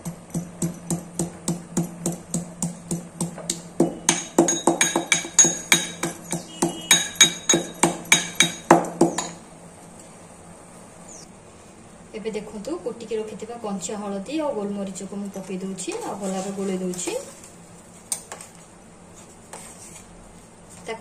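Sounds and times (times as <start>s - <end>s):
pestle pounding spices: 0.0s - 9.4s.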